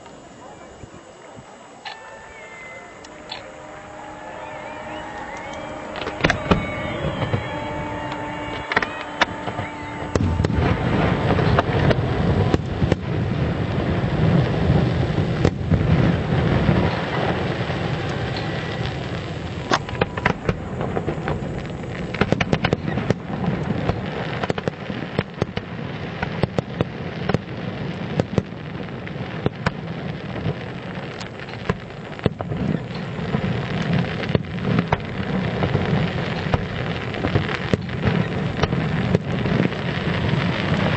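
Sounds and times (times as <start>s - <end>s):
fireworks crackling: 0.0s - 40.9s
sharp bangs: 3.1s - 13.2s
fireworks booms and rumble: 3.3s - 40.9s.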